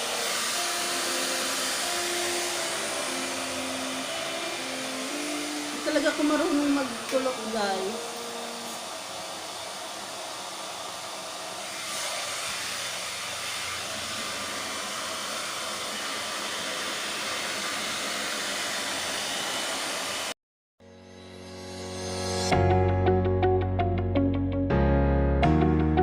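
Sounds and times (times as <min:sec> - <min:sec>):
hair dryer blowing air: 0:00.0 - 0:20.4, 0:21.4 - 0:22.6
soft piano music: 0:00.5 - 0:08.7, 0:20.8 - 0:26.0.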